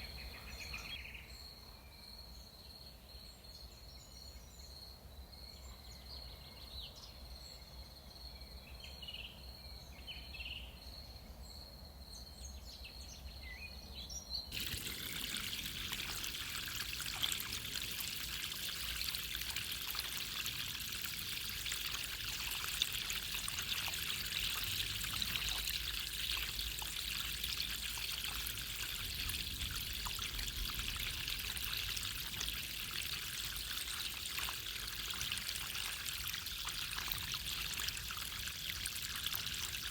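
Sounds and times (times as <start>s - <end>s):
running water splashing: 14.5s - 39.9s.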